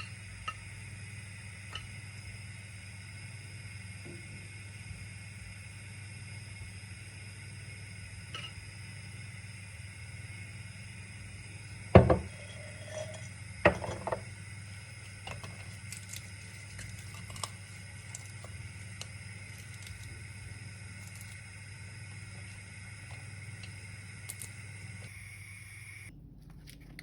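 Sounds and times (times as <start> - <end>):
steady hum: 0.0 - 27.0
pots set down knocking: 12.0 - 14.3.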